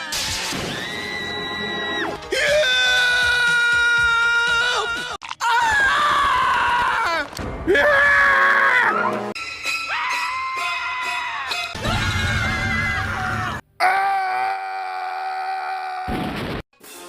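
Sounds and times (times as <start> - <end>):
cartoon characters screaming: 2.4 - 9.1, 9.9 - 16.2.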